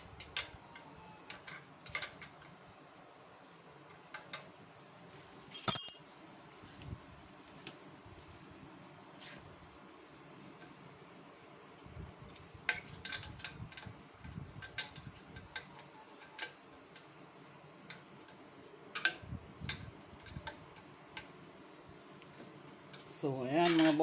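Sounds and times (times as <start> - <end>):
hand tools clinking on bolts: 5.5 - 6.3, 23.0 - 24.0.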